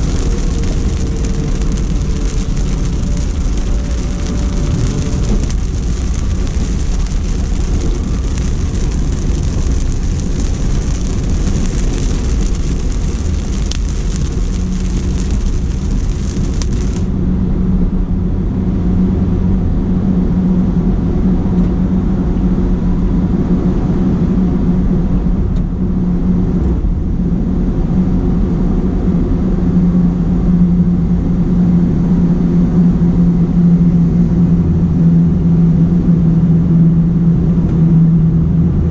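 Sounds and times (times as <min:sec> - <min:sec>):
rain hiss: 0:00.0 - 0:17.1
car rumble and hum from inside: 0:00.0 - 0:38.9.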